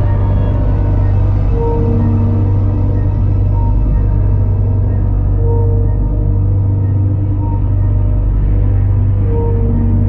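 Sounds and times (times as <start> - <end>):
held synth notes: 0.0 - 7.8
dark ambient music drone: 0.0 - 10.0.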